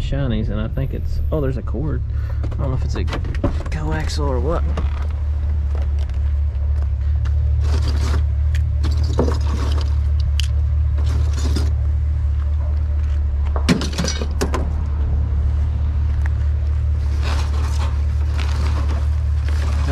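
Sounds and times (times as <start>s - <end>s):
vehicle engine rumbling: 0.0s - 19.9s.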